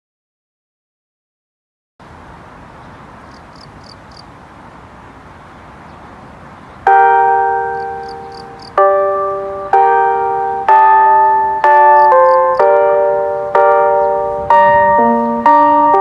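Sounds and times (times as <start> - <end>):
outdoor hiss: 2.0 - 14.2
faint high chirps: 2.4 - 15.9.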